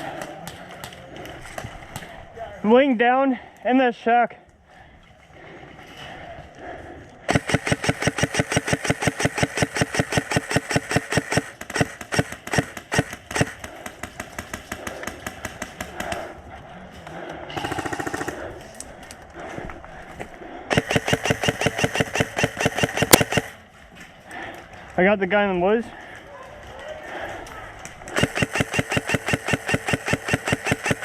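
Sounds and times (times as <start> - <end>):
airsoft rifle shots: 7.3 - 16.2, 20.7 - 23.6, 28.1 - 31.0.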